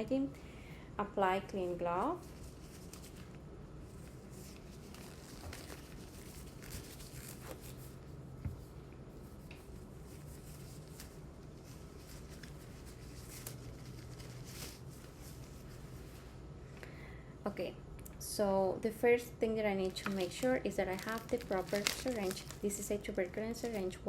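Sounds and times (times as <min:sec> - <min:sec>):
rustling of hand handling: 0:01.9 - 0:16.5, 0:19.8 - 0:24.0.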